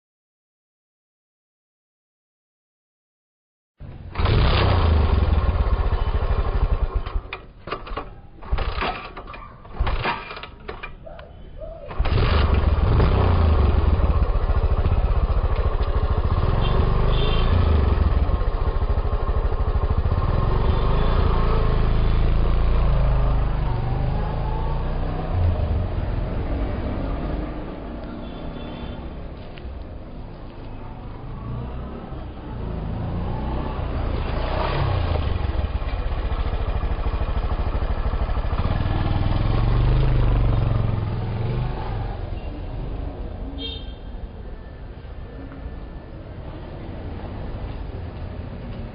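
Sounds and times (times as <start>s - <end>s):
motorcycle engine running: 4.2s - 7.3s, 12.0s - 23.9s, 34.2s - 41.4s.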